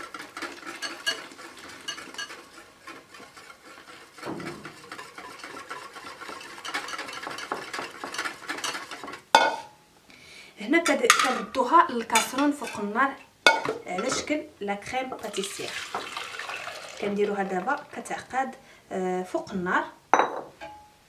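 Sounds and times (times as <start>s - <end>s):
utensil scraping mixing bowl: 0.0s - 9.6s, 10.8s - 14.4s, 15.2s - 18.3s.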